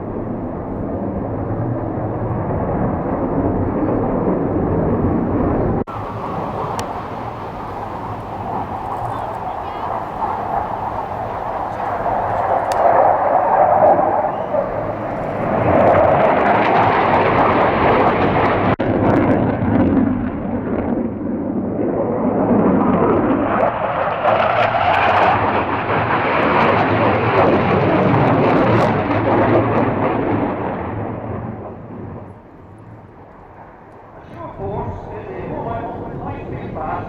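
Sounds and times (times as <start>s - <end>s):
jet roar flying past: 4.0s - 32.4s.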